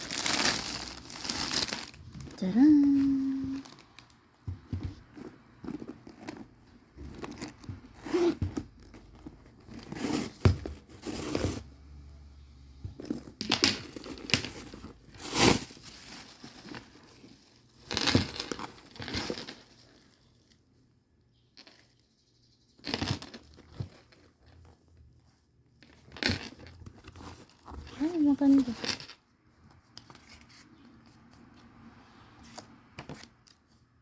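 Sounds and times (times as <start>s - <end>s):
packaging crinkling and tearing: 0.0s - 2.4s.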